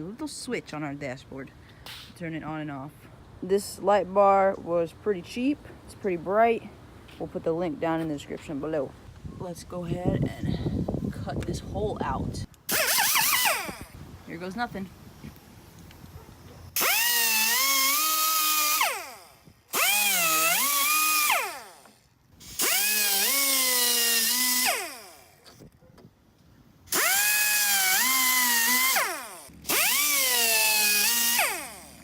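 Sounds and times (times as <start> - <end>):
power tool cutting into bumper: 12.7 - 14.0, 16.8 - 25.6, 26.9 - 32.0.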